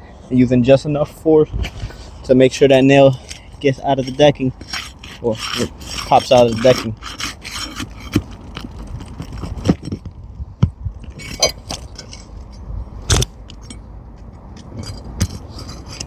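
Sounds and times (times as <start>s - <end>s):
pry bar clicks and scrapes: 3.2s - 10.2s, 11.0s - 16.0s.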